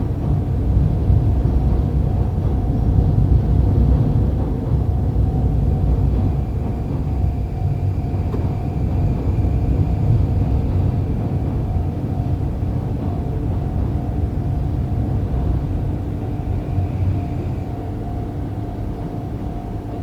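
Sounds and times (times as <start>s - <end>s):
electric train rumble: 0.0s - 20.0s.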